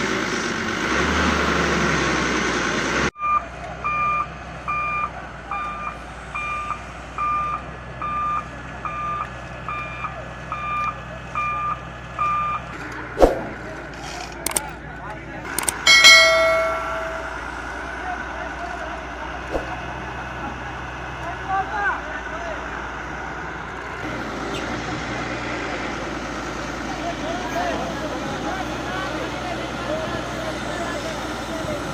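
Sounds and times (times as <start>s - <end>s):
low diesel engine hum: 0.0s - 31.9s
excavator travel alarm beeping: 3.2s - 12.7s, 15.6s - 17.7s
loud rushing noise: 13.1s - 13.6s.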